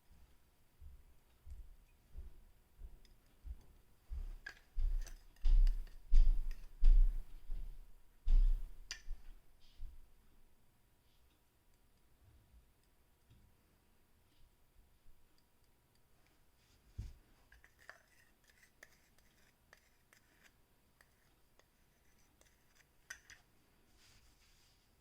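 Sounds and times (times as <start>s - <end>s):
hand tools clicking and scraping: 4.4s - 6.7s, 17.5s - 23.5s.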